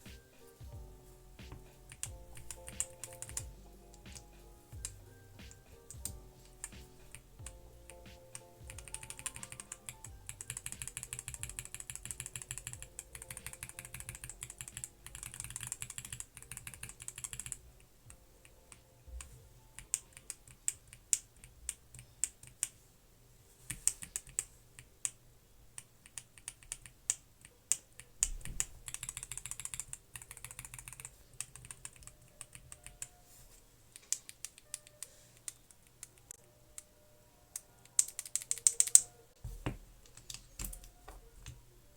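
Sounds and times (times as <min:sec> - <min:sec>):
mechanical keyboard typing: 0:01.8 - 0:17.6, 0:19.2 - 0:22.8, 0:25.8 - 0:33.2, 0:37.8 - 0:39.1.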